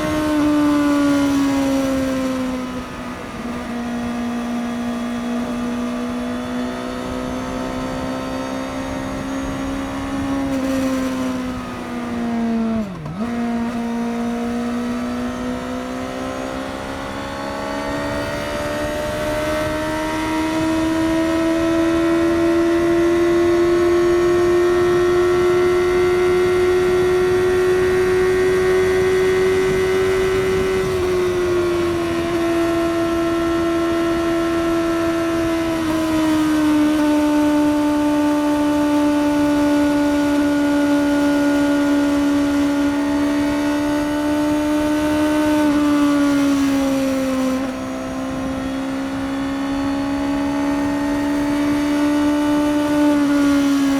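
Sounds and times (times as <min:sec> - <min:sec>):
motorcycle engine droning: 0:00.0 - 0:53.9.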